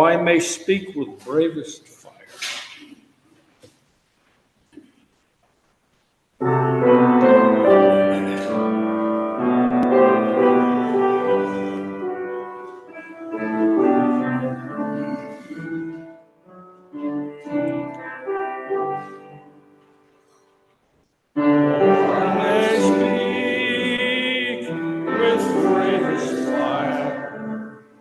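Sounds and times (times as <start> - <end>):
piano playing hymn chords: 6.4 - 20.1, 21.3 - 28.0.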